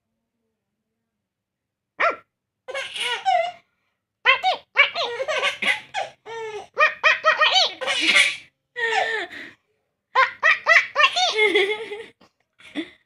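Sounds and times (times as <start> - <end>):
baby laughing: 2.7 - 3.6, 4.3 - 9.2, 10.2 - 12.8.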